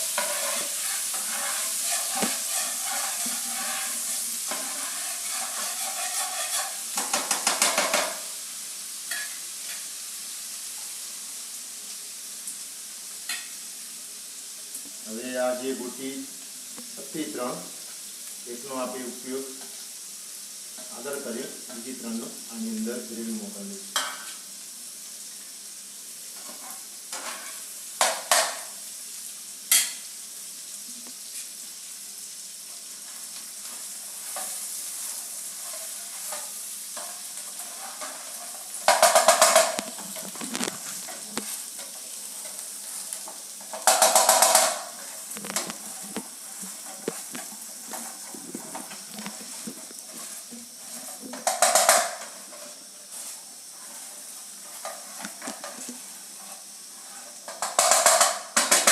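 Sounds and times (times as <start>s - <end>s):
gravy sizzling in oil: 0.0s - 58.9s
spoon stirring and clicking on pan: 0.1s - 8.2s, 33.6s - 48.2s, 57.5s - 58.9s.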